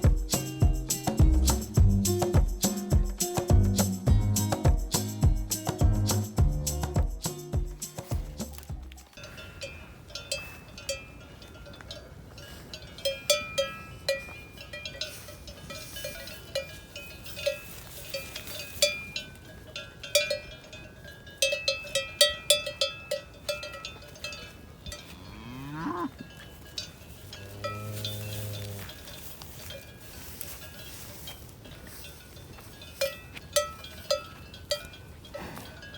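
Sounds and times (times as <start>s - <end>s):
cowbells clanking: 0.0s - 35.9s
cow mooing: 25.1s - 26.2s, 27.4s - 29.0s.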